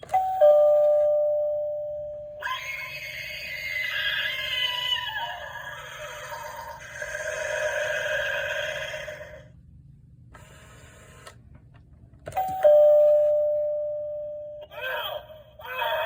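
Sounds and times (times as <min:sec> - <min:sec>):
electronic ding-dong chime: 0:00.1 - 0:02.4, 0:12.4 - 0:14.7.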